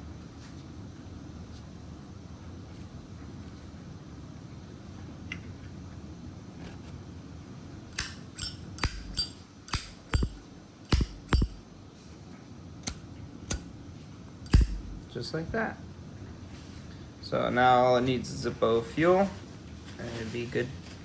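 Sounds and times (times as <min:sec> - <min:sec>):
metallic lighter clicks: 0:08.0 - 0:11.6, 0:14.5 - 0:15.1.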